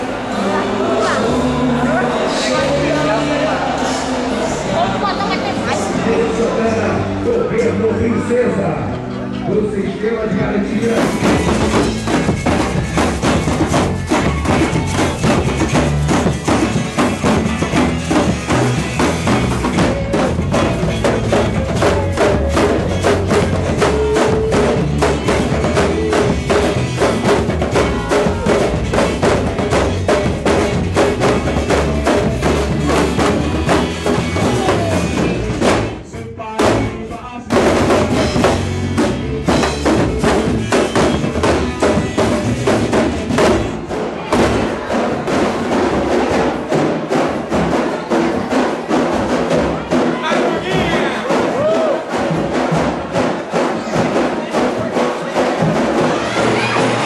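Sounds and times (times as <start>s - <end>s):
drum and percussion music: 0.0s - 57.0s.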